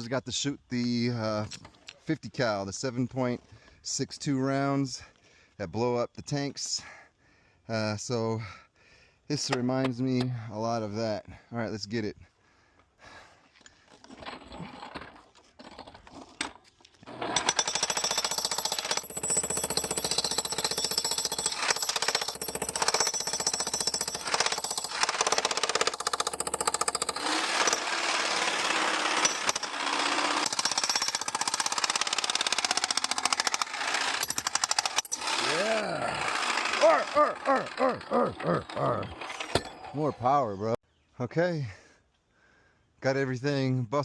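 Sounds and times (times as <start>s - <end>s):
jackhammer hammering concrete: 17.1s - 39.7s.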